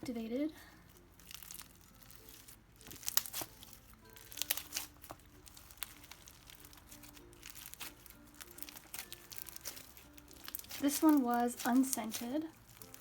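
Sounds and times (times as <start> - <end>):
faint background music: 0.0 - 13.0
slime sticky clicks and pops: 2.8 - 13.0.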